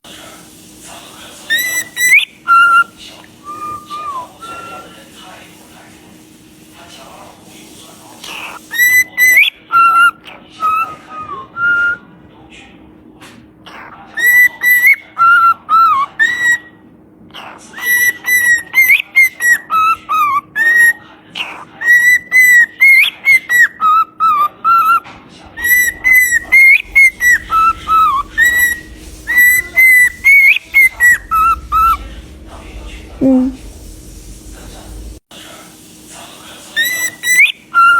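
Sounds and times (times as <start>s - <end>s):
parrot whistling a tune: 1.5s - 5.0s, 8.6s - 12.1s, 14.2s - 16.8s, 17.8s - 25.0s, 25.6s - 32.1s, 36.8s - 37.9s.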